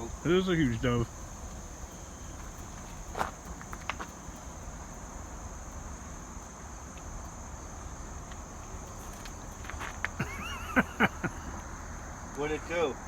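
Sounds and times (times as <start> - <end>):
insects droning: 0.0 - 13.0
faint ticks: 1.0 - 10.2.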